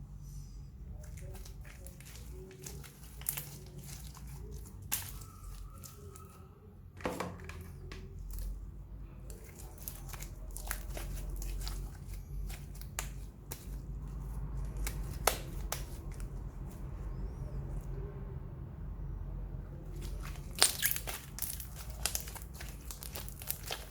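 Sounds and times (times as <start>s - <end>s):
slime squished by hand: 0.9s - 6.4s, 9.2s - 17.4s, 19.9s - 23.9s.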